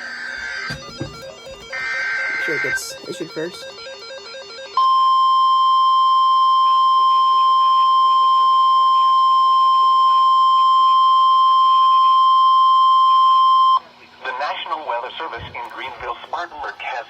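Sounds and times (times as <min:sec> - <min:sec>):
steady warning alarm tone: 0:00.0 - 0:13.8.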